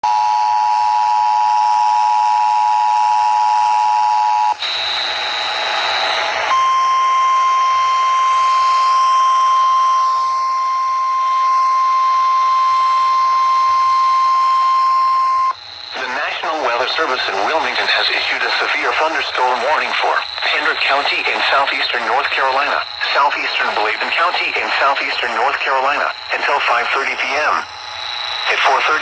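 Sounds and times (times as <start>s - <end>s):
long single-pitch alarm tone: 0.0s - 16.0s, 27.5s - 29.0s
radio static: 15.8s - 29.0s.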